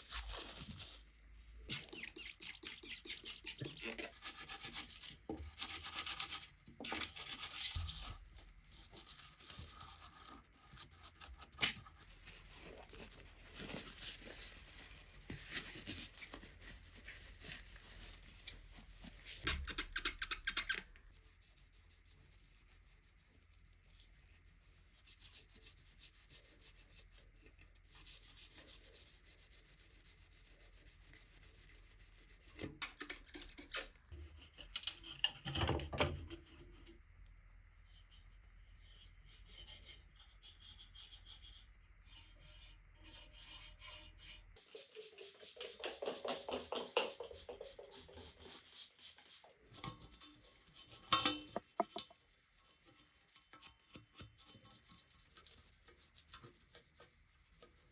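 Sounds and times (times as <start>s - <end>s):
hand rubbing and scraping: 44.6s - 53.9s.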